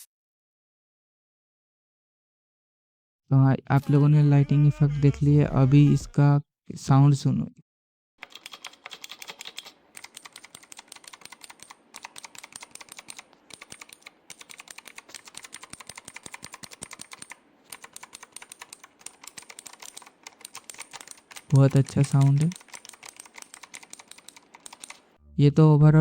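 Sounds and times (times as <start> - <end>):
mechanical keyboard typing: 8.2 - 25.2.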